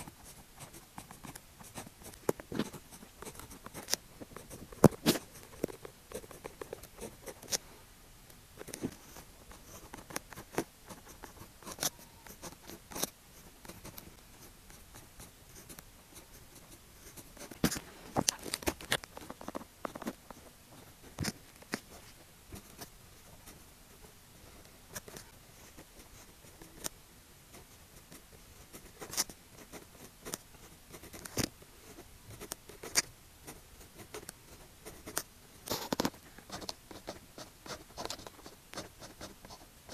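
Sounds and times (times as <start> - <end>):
pen writing on paper: 0.0 - 7.6, 8.6 - 13.1.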